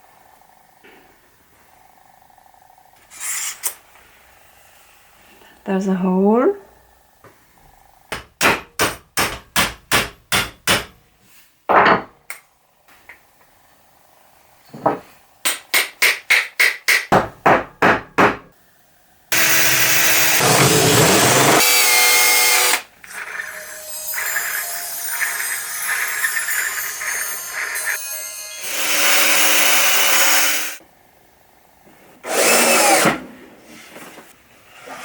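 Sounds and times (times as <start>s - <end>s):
power tool running: 19.3s - 30.8s
woodworking tool strokes: 19.4s - 30.8s.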